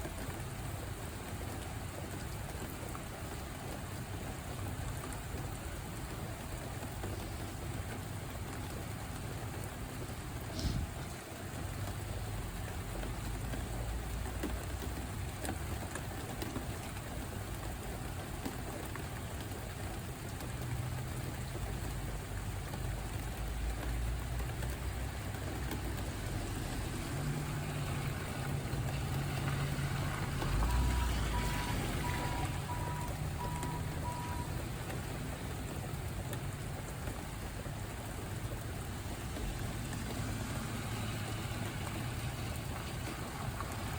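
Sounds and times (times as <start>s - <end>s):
steady rain falling: 0.0s - 43.9s
faint repeating beep: 30.7s - 34.6s.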